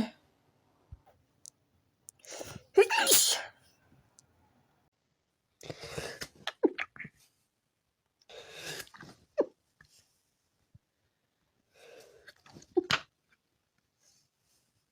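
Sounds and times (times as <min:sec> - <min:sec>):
person sneezing: 0:02.3 - 0:03.6.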